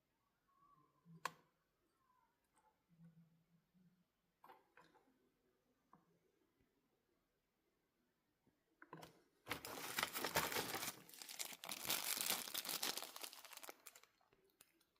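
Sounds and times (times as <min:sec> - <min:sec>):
crinkling and rustling: 0:09.4 - 0:14.9.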